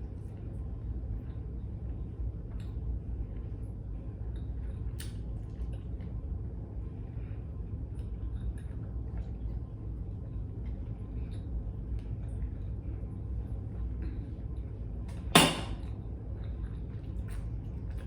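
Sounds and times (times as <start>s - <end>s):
steady low hum: 0.0s - 18.0s
chewing and mouth clicks: 0.2s - 6.4s, 7.8s - 12.8s, 15.9s - 18.0s.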